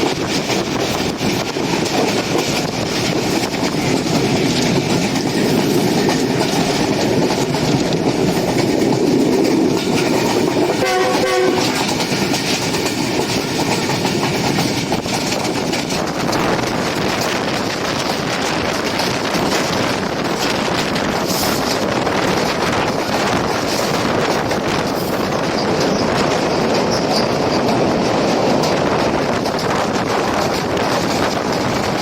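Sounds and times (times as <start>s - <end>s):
train running on rails: 0.0s - 32.0s
locomotive horn: 10.7s - 11.8s.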